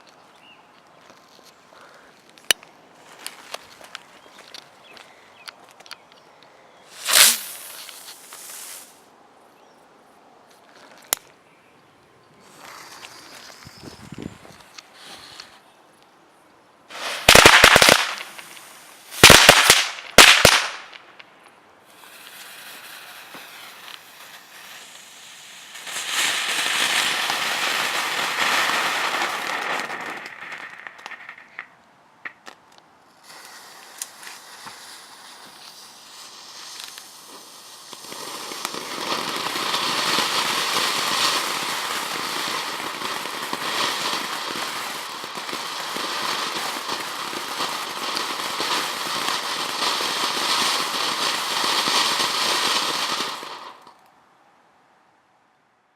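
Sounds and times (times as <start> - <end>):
fireworks hissing crackle: 6.8 - 9.1, 12.4 - 15.7, 16.9 - 21.2, 21.8 - 54.0
fireworks pops: 6.9 - 9.0, 16.9 - 24.7, 25.8 - 54.0.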